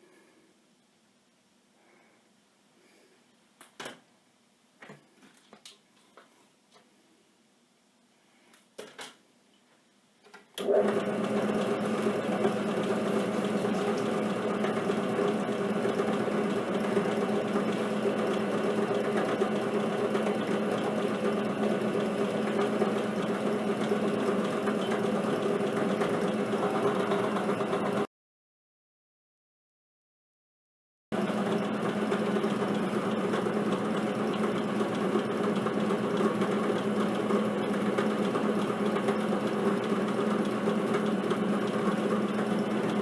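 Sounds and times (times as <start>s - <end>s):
drill press humming: 10.6s - 28.1s, 31.2s - 43.0s
core drill grinding stone: 11.1s - 27.5s.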